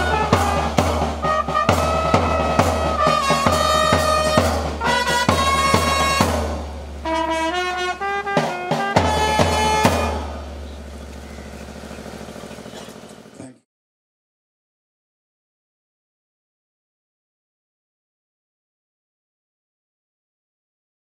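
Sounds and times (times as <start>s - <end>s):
brass melody over drum beat: 0.0s - 10.9s.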